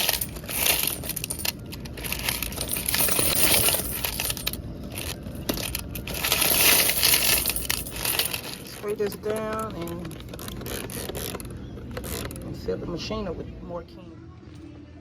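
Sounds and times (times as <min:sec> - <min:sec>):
coins pouring into a bag: 0:00.0 - 0:09.2.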